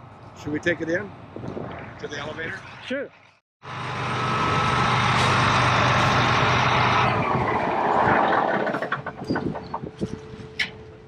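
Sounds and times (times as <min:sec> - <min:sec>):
tractor engine running loudly: 0:03.6 - 0:07.5.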